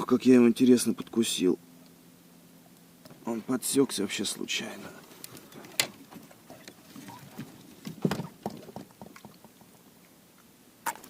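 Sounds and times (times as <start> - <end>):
fish body knocking and slapping: 5.4 - 9.8.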